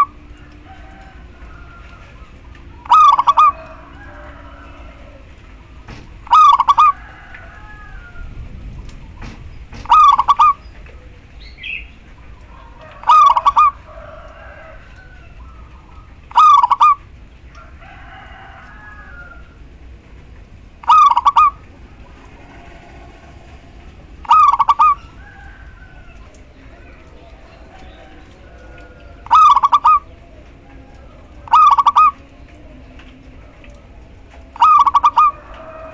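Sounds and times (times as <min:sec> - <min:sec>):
faint bird calls: 0:00.0 - 0:13.8, 0:20.8 - 0:35.7
dove rolling coo: 0:00.0 - 0:17.1, 0:20.4 - 0:35.9.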